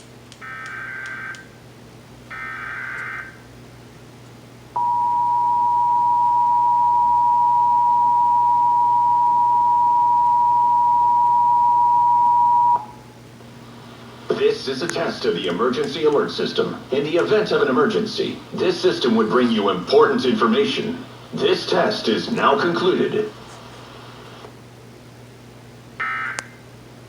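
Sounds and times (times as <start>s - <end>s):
two-tone attention signal: 4.8s - 13.0s.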